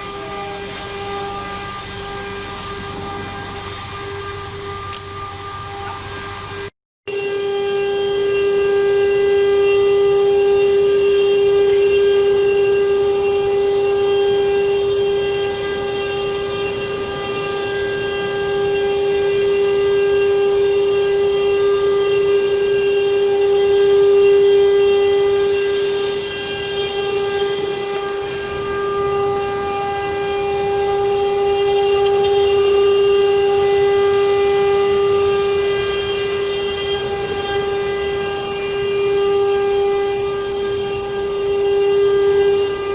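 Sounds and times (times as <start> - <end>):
router spindle high whine: 0.0 - 42.9.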